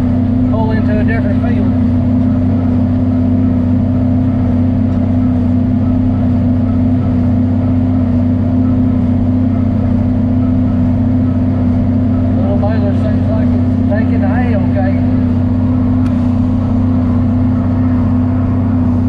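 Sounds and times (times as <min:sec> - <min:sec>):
tractor diesel engine droning: 0:00.0 - 0:19.0.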